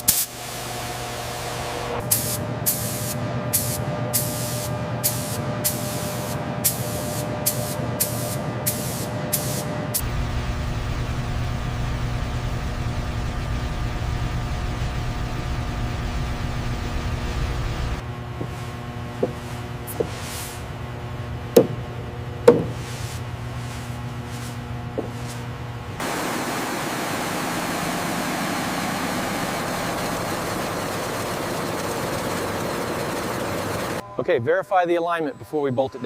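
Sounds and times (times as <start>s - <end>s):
low machine hum: 0.3s - 34.5s
sharp metallic knocks: 21.6s - 21.8s, 22.5s - 22.8s.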